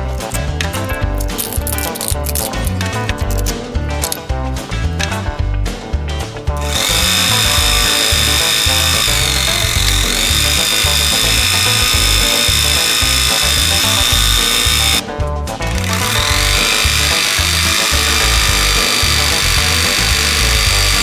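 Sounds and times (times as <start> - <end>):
background music with beat: 0.0 - 21.0
scroll saw whining: 6.6 - 15.0, 15.8 - 21.0.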